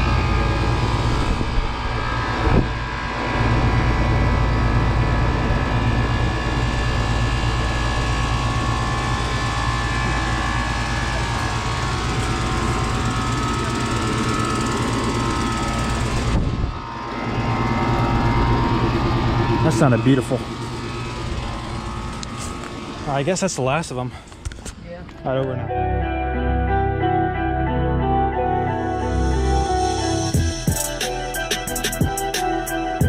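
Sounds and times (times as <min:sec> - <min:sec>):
condenser fan whirring: 0:00.0 - 0:25.6
air conditioner compressor humming: 0:00.0 - 0:25.9, 0:29.4 - 0:33.0.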